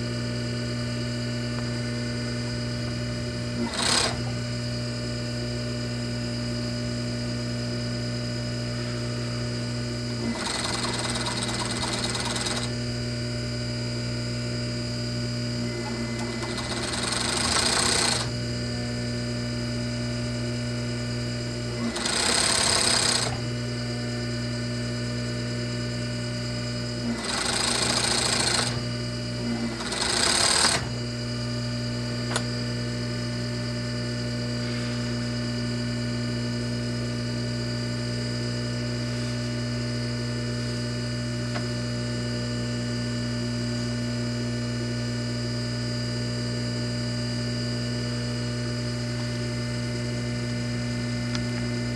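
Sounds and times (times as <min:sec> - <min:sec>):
sewing machine humming: 0:02.4 - 0:04.6, 0:09.0 - 0:13.2, 0:15.5 - 0:19.3, 0:21.5 - 0:24.4, 0:26.8 - 0:31.2
sewing machine stitching bursts: 0:03.5 - 0:04.4, 0:10.1 - 0:12.8, 0:15.6 - 0:18.4, 0:21.7 - 0:23.5, 0:27.0 - 0:31.0.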